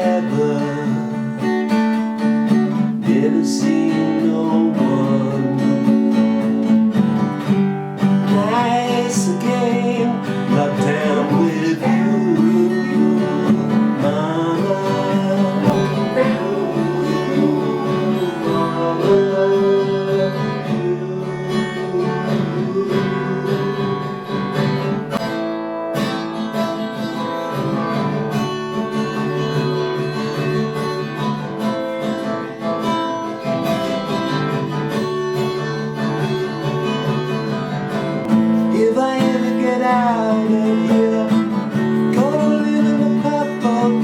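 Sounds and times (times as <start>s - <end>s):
acoustic guitar strummed and picked: 0.0s - 44.0s.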